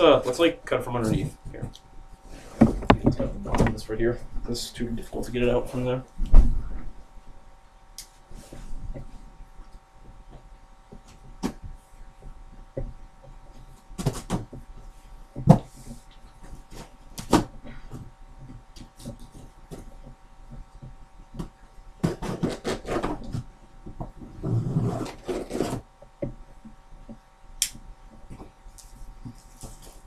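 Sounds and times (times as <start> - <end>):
knocks and scrapes on cardboard: 12.8 - 26.4, 29.2 - 30.0
cardboard rustling: 21.4 - 25.8, 28.3 - 30.0.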